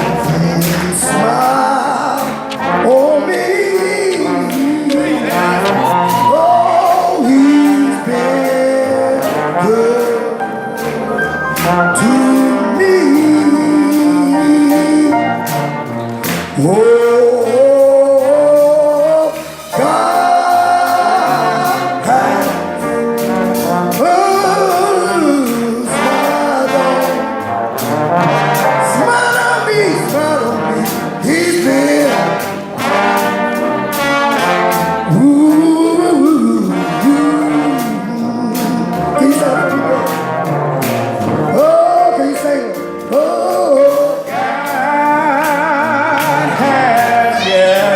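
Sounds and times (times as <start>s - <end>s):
steady drum beat: 0.0s - 47.9s
trombone melody: 0.0s - 47.9s.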